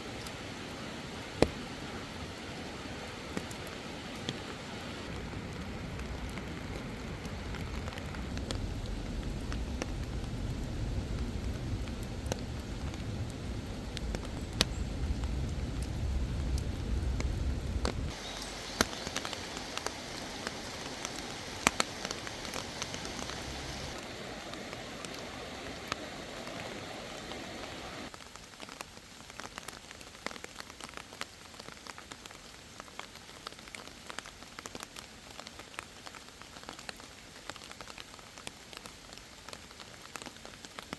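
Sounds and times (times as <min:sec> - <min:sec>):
rain drops tapping: 0:00.0 - 0:40.9
steady hiss of rain: 0:00.0 - 0:40.9.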